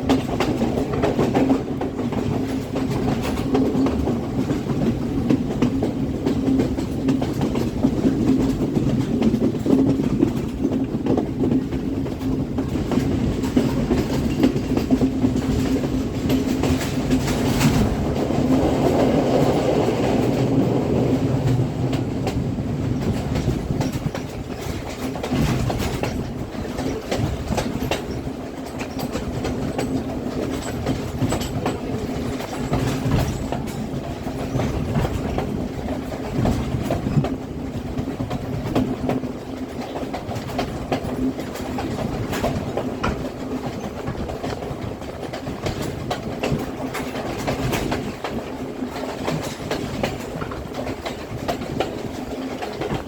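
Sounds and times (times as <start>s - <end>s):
train rumbling: 0.0s - 53.0s
wheels clicking over rails: 0.0s - 53.0s.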